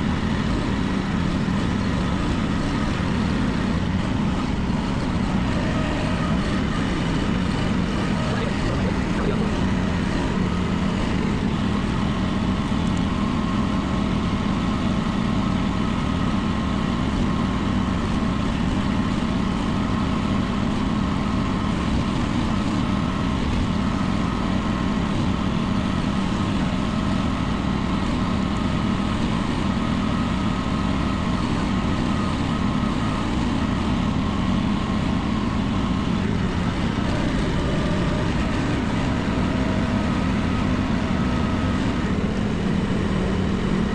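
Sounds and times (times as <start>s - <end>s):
mini excavator engine running: 0.0s - 43.9s.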